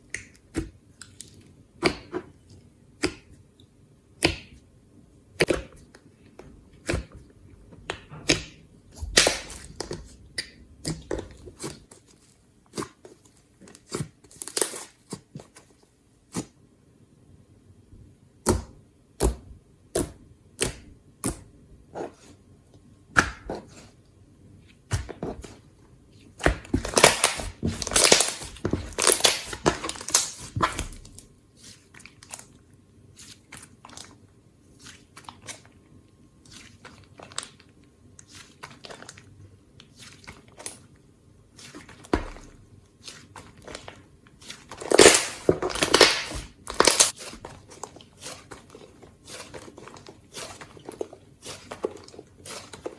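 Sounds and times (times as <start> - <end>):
slime squishing and popping: 26.4 - 31.2, 41.6 - 52.9.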